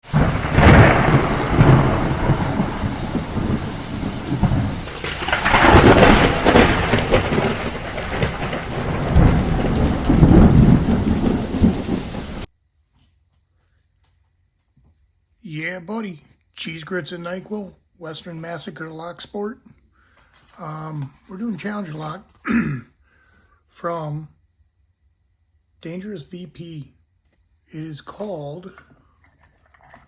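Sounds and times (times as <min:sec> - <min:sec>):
heavy rain: 0:00.0 - 0:12.5
rolling thunder: 0:00.0 - 0:12.5.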